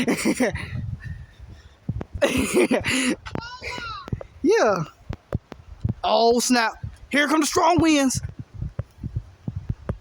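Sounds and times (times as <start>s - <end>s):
wind buffeting microphone: 0.0s - 10.0s
person's voice: 6.0s - 8.3s.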